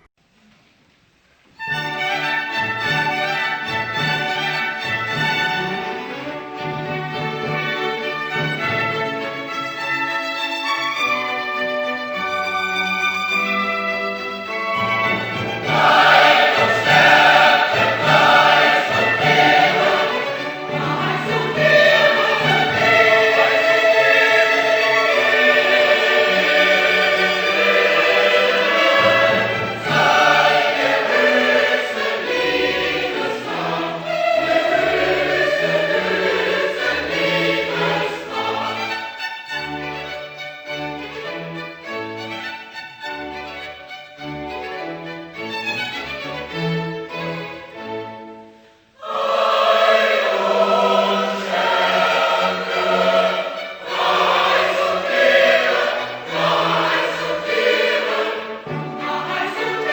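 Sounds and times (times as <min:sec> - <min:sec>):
bowed strings: 0:01.6 - 0:48.4, 0:49.0 - 0:59.9
orchestra playing: 0:01.6 - 0:59.9
choir singing held chords: 0:14.7 - 0:39.2, 0:48.5 - 0:59.9.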